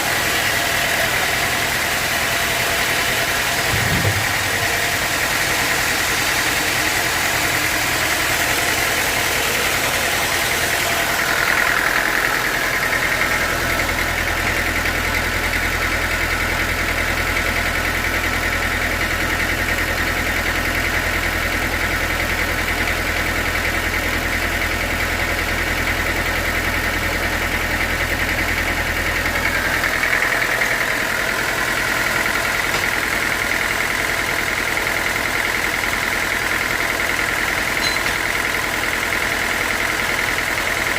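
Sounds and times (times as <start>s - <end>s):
sawmill machine drone with whine: 0.0s - 19.0s, 24.9s - 40.9s
deep low hum: 3.6s - 5.0s.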